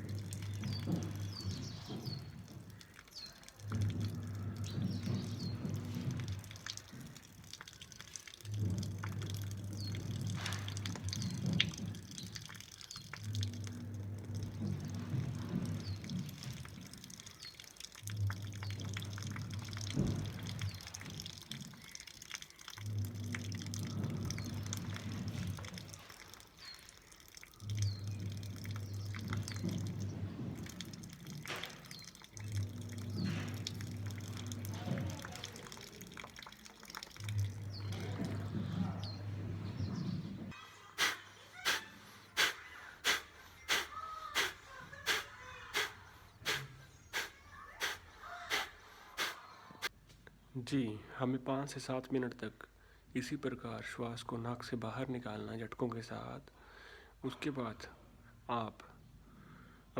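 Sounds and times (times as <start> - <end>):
water pouring and dripping: 0.0 - 39.9, 41.0 - 50.0
low steady hum: 8.2 - 17.2, 22.6 - 26.0, 27.6 - 40.6.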